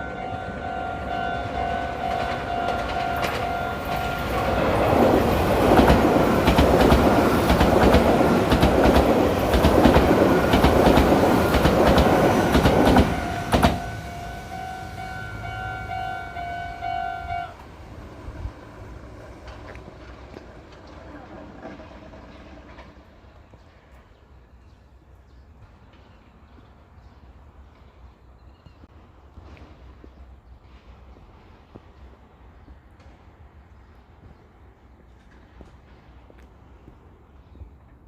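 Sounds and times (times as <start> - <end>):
level crossing warning bell: 0.0 - 5.2, 12.2 - 17.6
electric train passing: 0.0 - 38.0
wheels clicking over rail joints: 1.4 - 16.8, 17.6 - 24.3.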